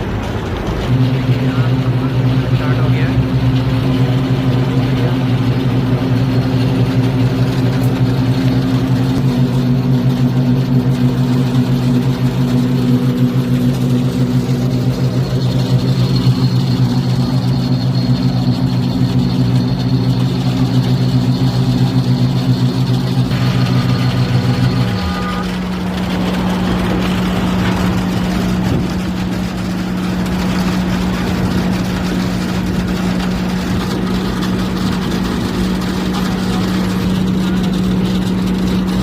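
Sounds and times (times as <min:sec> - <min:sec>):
diesel engine running steadily: 0:00.0 - 0:39.0
faint high whine: 0:09.4 - 0:29.3.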